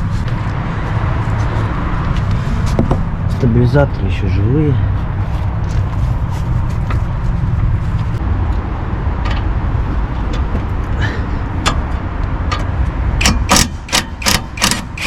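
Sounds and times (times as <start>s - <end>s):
metallic clicks of hand tools: 12.5s - 15.0s.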